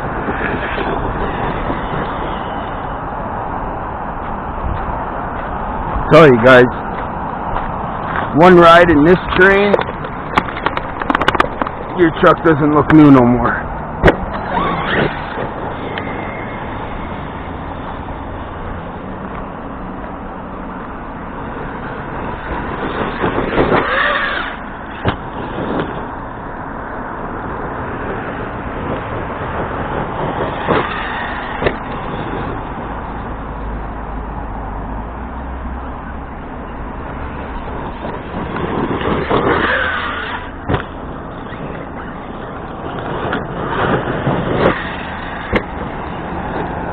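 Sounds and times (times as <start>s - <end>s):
toy truck motor whining: 23.8s - 24.6s.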